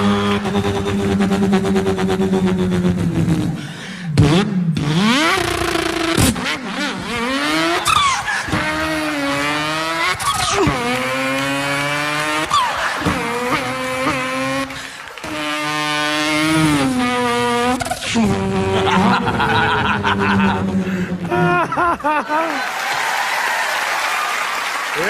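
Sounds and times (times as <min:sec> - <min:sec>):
person imitating a racing car: 0:00.0 - 0:22.6.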